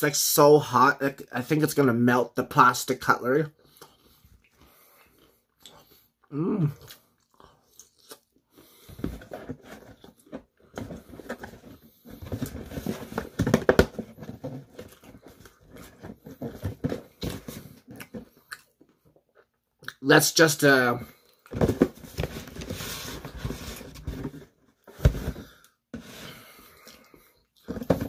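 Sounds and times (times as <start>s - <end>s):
crunching and chewing: 6.7s - 8.8s.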